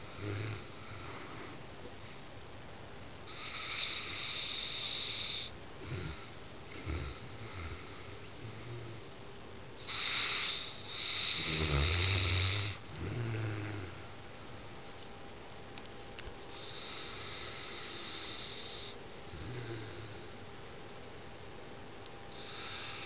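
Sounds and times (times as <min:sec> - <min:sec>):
dog snoring: 0:00.0 - 0:01.6, 0:03.3 - 0:09.1, 0:09.8 - 0:14.1, 0:16.5 - 0:20.4, 0:22.3 - 0:23.0.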